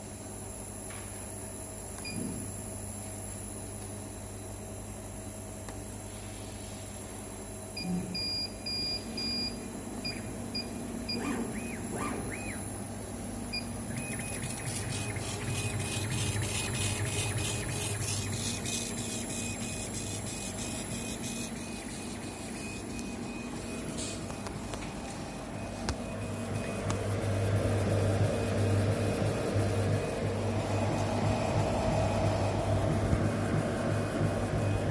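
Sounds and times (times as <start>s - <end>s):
constant low hum: 9.9s - 34.9s
machine whine with rapid ticking: 10.0s - 34.9s
motors rising and falling in pitch: 11.1s - 12.8s, 13.6s - 25.2s, 25.8s - 34.9s.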